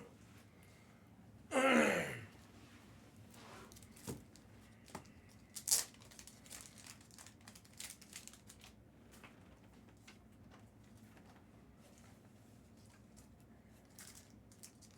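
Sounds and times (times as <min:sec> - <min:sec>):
plastic wrapping crinkling and tearing: 0:05.5 - 0:08.8.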